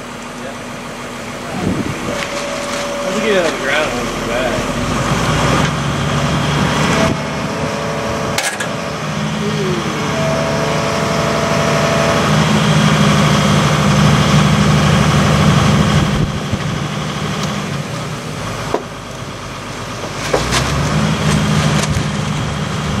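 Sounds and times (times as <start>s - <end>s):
engine running: 0.0s - 23.0s.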